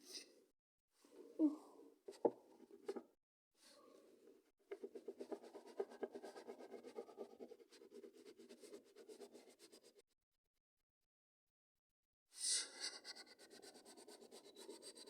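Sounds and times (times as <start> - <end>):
drawing tool scribbling on paper: 4.7 - 10.0, 12.7 - 15.0.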